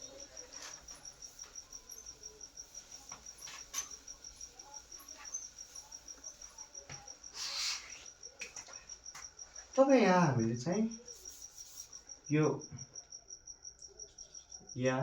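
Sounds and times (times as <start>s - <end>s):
cricket chirping: 0.0s - 15.0s.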